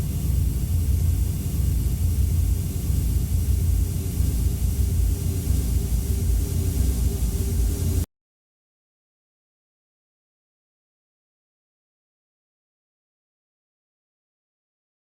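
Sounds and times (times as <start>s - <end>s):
hiss: 0.0s - 8.0s
deep low rumble: 0.0s - 8.1s
faint steady hum: 0.0s - 8.1s.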